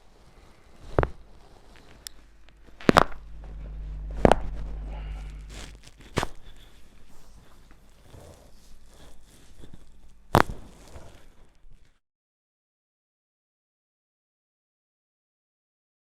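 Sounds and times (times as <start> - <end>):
low hum: 0.4 - 11.3.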